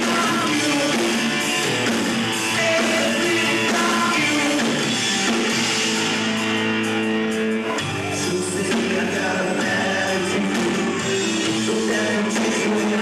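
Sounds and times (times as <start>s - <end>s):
person singing: 0.0s - 1.6s, 2.4s - 5.0s, 7.6s - 13.0s
rock band playing live: 0.0s - 13.0s.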